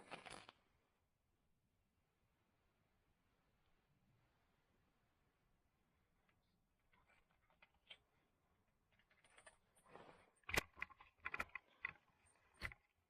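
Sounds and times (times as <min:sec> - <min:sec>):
scattered clicks: 0:10.5 - 0:12.9.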